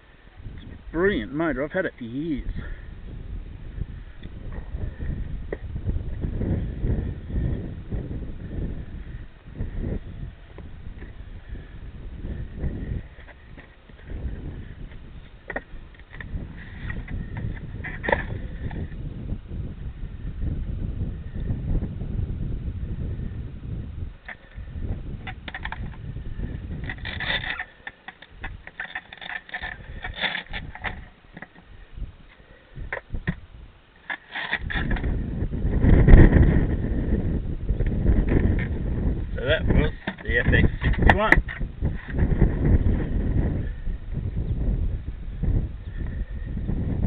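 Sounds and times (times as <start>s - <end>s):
wind buffeting microphone: 0.0s - 47.0s
scratchy clicks and rustles: 26.8s - 31.7s, 34.0s - 35.1s, 39.9s - 42.2s.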